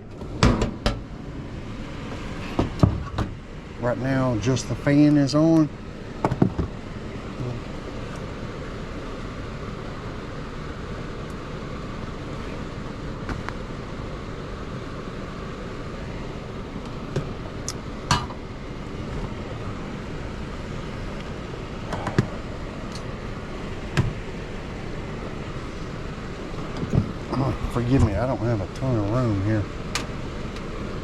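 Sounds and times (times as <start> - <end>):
blower fan running: 0.0 - 31.0
sharp clicks and knocks: 29.9 - 30.7.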